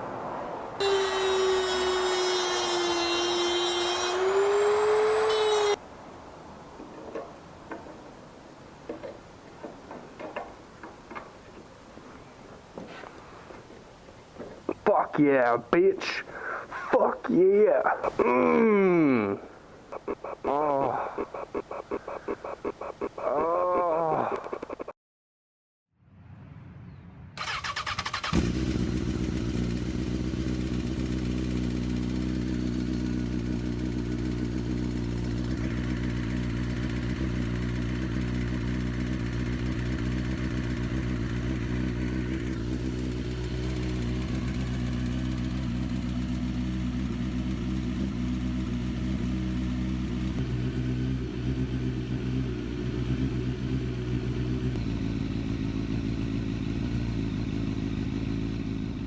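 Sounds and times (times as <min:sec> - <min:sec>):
motorcycle engine idling: 0:27.4 - 0:59.0.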